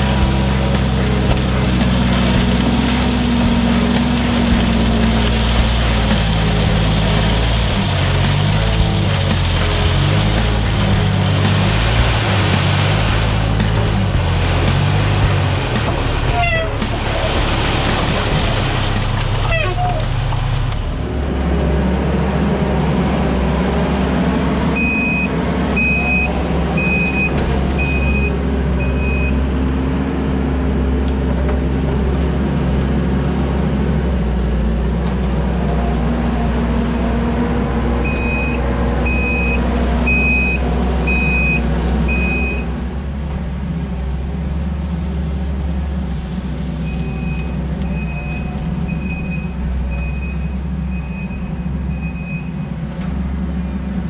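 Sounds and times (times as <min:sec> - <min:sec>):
diesel engine running hard: 0:00.0 - 0:54.0
reversing alarm beeping: 0:24.8 - 0:29.4, 0:38.0 - 0:42.7, 0:46.8 - 0:52.6.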